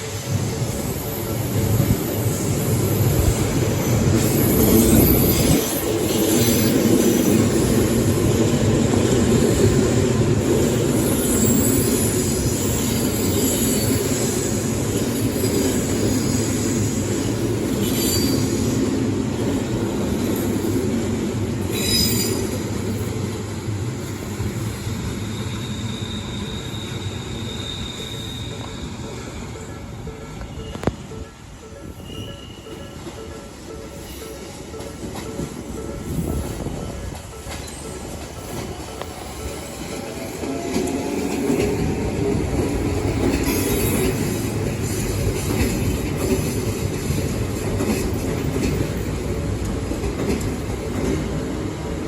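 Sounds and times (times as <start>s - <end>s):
high wheel squeal: 0.0s - 7.8s, 10.9s - 18.9s, 21.7s - 23.1s, 24.1s - 31.2s, 31.8s - 33.1s
train wheels rumbling on rail: 0.0s - 52.0s.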